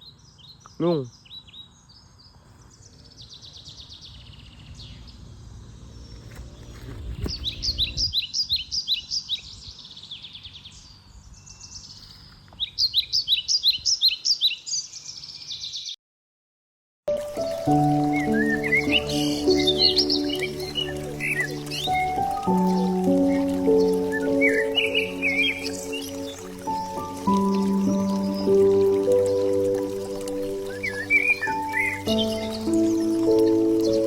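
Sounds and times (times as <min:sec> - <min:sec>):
small birds chirping: 0:00.0 - 0:16.0, 0:17.4 - 0:34.0
music: 0:17.1 - 0:34.0.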